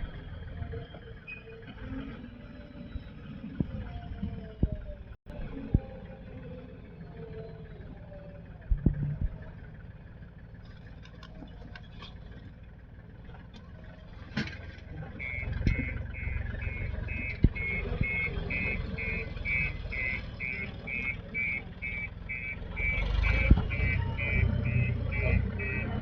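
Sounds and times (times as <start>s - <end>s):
diesel engine running: 0.0s - 26.0s
reversing alarm beeping: 15.1s - 26.0s.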